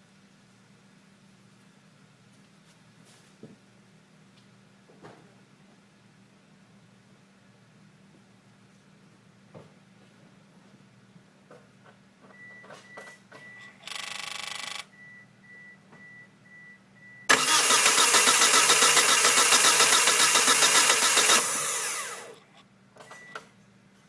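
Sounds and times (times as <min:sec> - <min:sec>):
starter cranking engine: 0:17.3 - 0:22.4.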